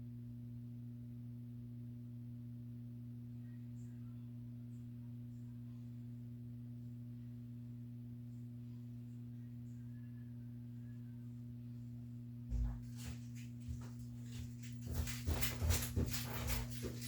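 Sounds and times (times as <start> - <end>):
steady low two-tone hum: 0.0 - 17.0.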